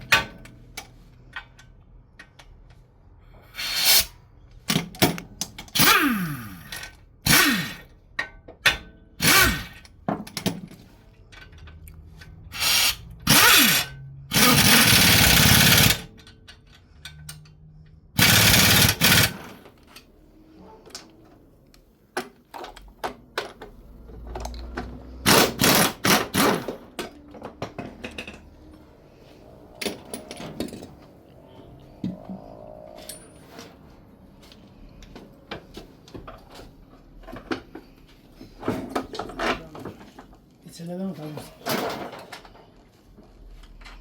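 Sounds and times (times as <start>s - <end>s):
power tool bursts: 5.8s - 7.9s, 9.2s - 9.8s, 12.5s - 16.1s, 18.2s - 19.5s.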